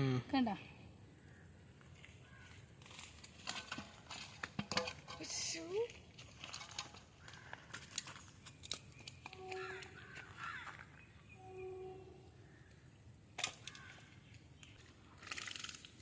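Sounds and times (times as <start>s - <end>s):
faint outdoor background: 0.0s - 16.0s
bird calling: 8.8s - 14.9s.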